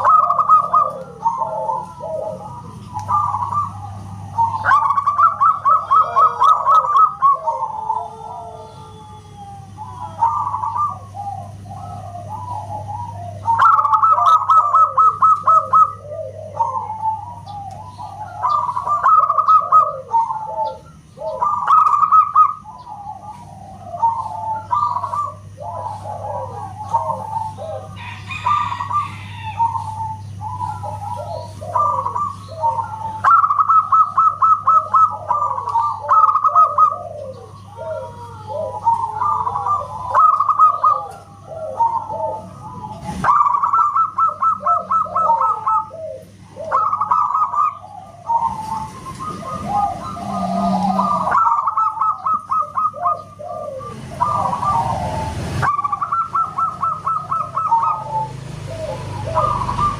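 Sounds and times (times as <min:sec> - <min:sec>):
doves cooing: 0:00.0 - 0:59.9
low hum: 0:46.1 - 0:55.5.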